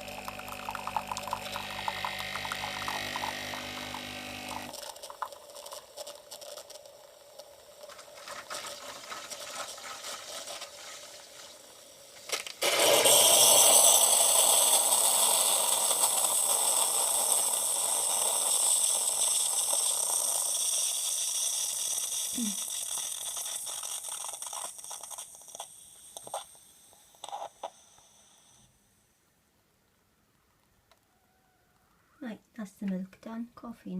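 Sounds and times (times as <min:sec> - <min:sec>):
coffee machine running and rattling: 0:00.0 - 0:07.0, 0:12.3 - 0:25.1
coffee machine loud hiss: 0:00.0 - 0:28.7.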